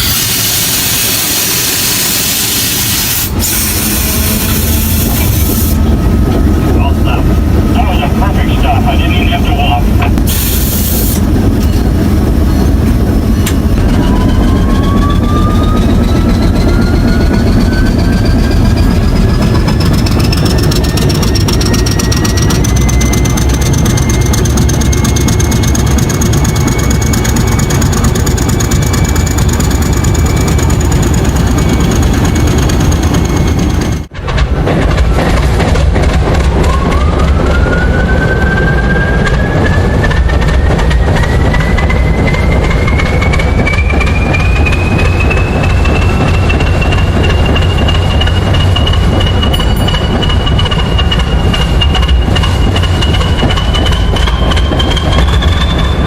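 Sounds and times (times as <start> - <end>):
large engine rumbling: 3.6 - 10.3, 10.9 - 56.0
engine whine rising in pitch: 13.0 - 34.1.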